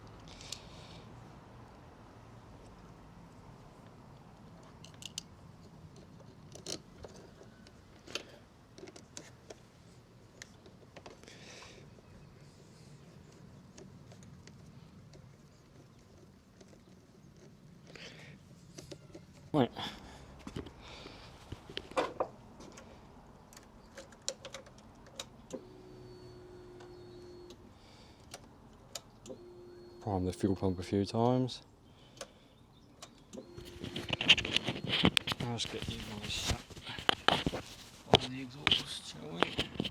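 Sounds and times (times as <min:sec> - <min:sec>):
small parts clicking and scraping: 0:00.0 - 0:00.8, 0:04.6 - 0:12.0.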